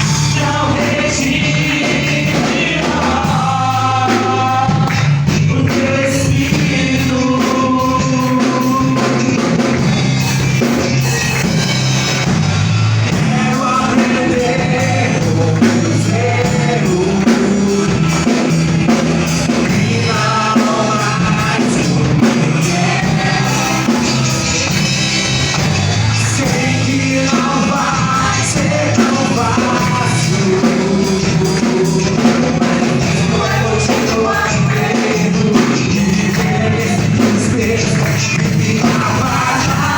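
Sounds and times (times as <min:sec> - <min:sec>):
band playing worship music: 0:00.0 - 0:39.9
people singing: 0:00.0 - 0:39.9.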